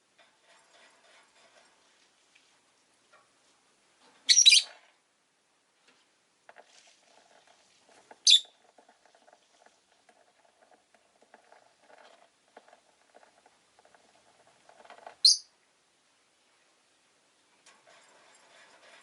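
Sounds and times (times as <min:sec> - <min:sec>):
lovebird shrill chirps: 0:04.3 - 0:04.7, 0:08.2 - 0:08.5, 0:15.2 - 0:15.5.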